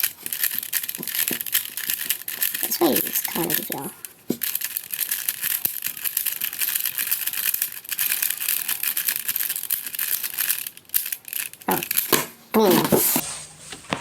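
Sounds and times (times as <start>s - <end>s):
speed cube clicking: 0.0s - 13.2s.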